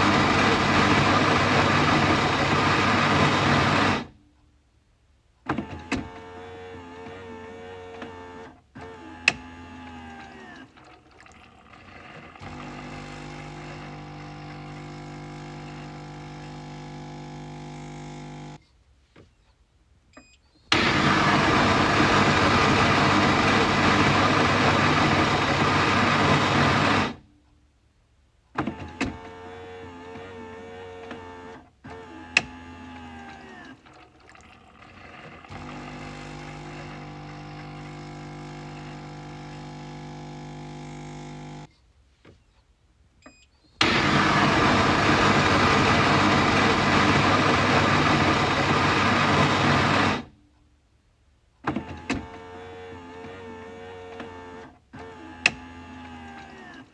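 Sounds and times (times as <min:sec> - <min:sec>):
coffee machine motor humming: 0:00.0 - 0:04.1, 0:11.3 - 0:18.6, 0:20.7 - 0:27.2, 0:34.5 - 0:41.7, 0:43.8 - 0:50.3.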